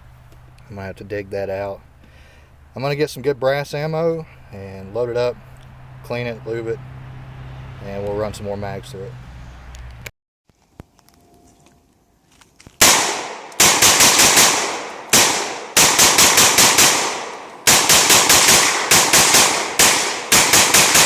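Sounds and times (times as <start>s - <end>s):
rifle shots echoing: 12.8s - 21.0s.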